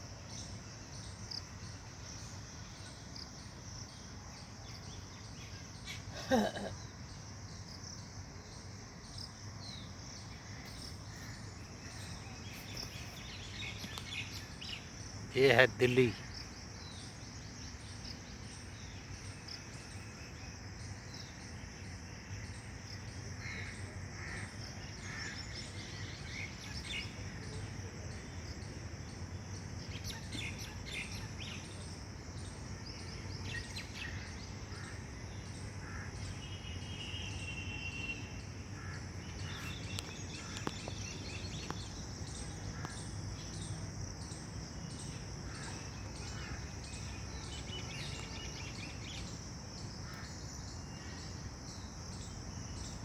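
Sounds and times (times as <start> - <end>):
high insect drone: 0.0 - 53.0
birds chirping and calling: 38.8 - 51.3.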